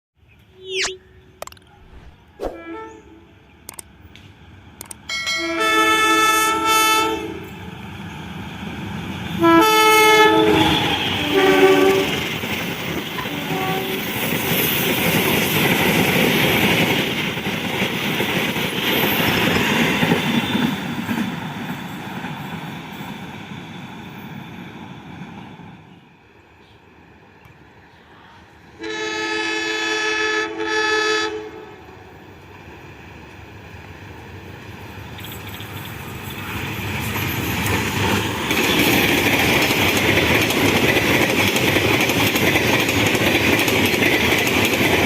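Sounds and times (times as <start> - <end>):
train passing rumble and rail clatter: 3.1 - 45.0
train horn blasts: 5.1 - 7.6, 9.4 - 12.2, 13.2 - 14.1, 28.8 - 32.1.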